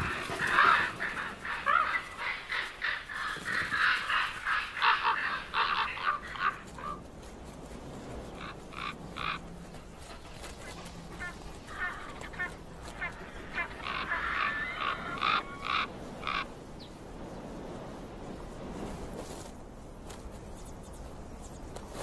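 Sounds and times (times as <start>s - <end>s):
ravens calling: 0.0s - 16.8s.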